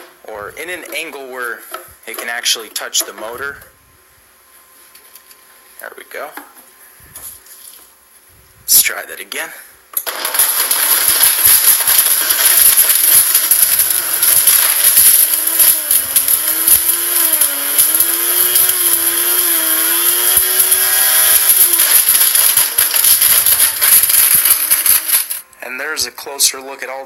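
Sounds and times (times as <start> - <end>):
blender motor whining: 10.1 - 25.4
phone rattling in blender jar: 19.9 - 25.4.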